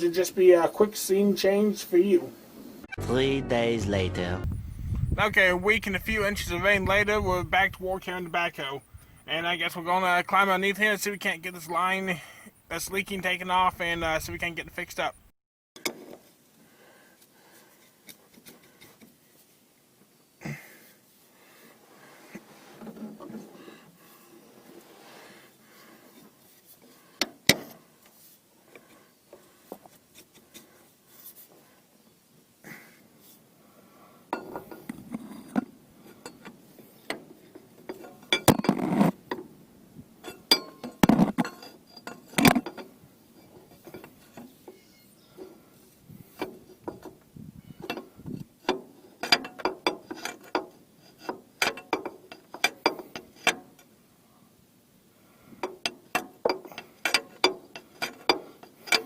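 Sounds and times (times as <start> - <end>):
hand tools clinking on steel: 7.6 - 15.2, 40.2 - 45.0.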